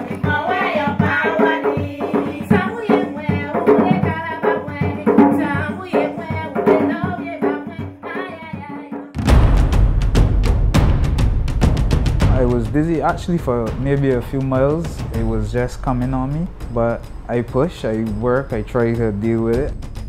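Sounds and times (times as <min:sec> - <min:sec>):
drum and percussion rhythm: 0:00.0 - 0:20.0.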